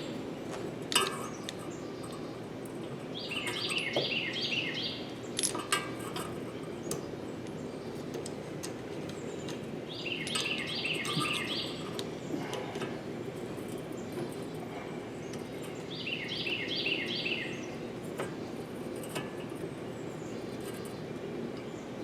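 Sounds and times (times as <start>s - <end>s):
low background noise: 0.0s - 22.0s
songbird chirping: 3.1s - 5.4s, 9.0s - 12.6s, 13.9s - 18.6s.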